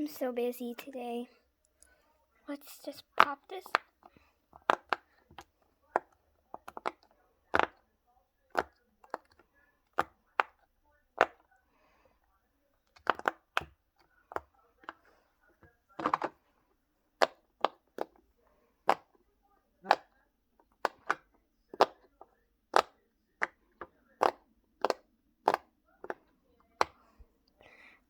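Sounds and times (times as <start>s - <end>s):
pop-it toy bubbles popping: 3.0s - 7.8s, 17.2s - 18.1s, 18.9s - 19.1s, 19.8s - 20.1s, 20.8s - 22.1s, 22.7s - 23.6s, 24.2s - 26.2s.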